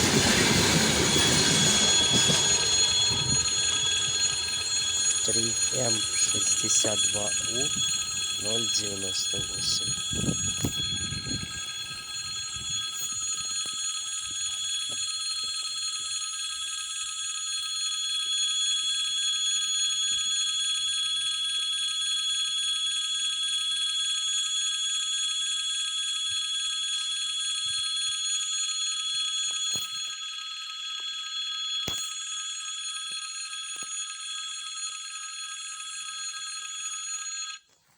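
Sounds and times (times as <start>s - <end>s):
electric bell ringing: 0.0s - 13.5s.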